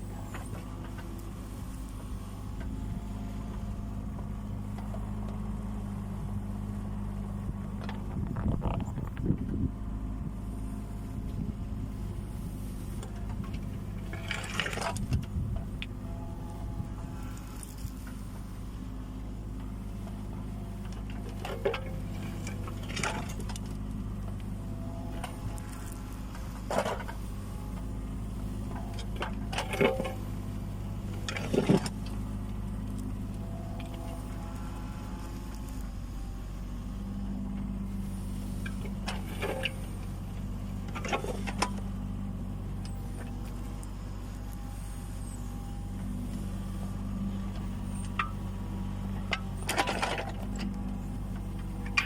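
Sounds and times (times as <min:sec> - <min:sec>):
excavator diesel engine running: 0:00.0 - 0:52.0
metallic clanking and scraping: 0:13.0 - 0:15.6, 0:21.1 - 0:23.7, 0:25.2 - 0:27.6, 0:28.7 - 0:30.2, 0:38.0 - 0:40.0, 0:49.2 - 0:50.7.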